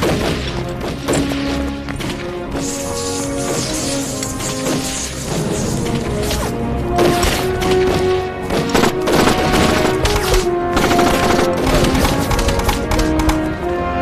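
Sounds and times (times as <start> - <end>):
dramatic orchestral music: 0.0 - 14.0
gunfire: 8.5 - 13.5.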